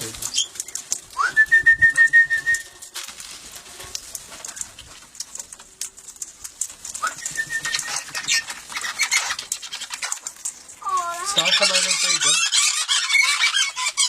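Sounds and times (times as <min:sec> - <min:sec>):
high whistled call with flutter: 0:00.3 - 0:02.9, 0:07.0 - 0:10.1.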